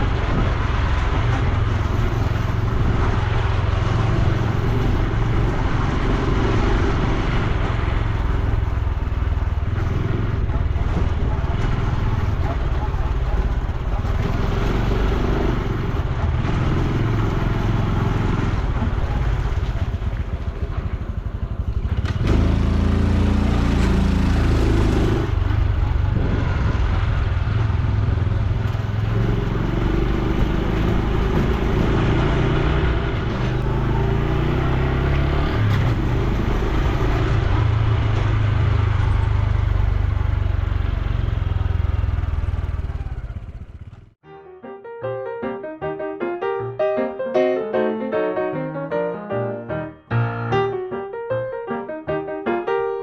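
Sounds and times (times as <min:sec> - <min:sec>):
wind noise on microphone: 0:00.0 - 0:20.6, 0:22.1 - 0:33.6
motorcycle engine running: 0:00.0 - 0:44.2.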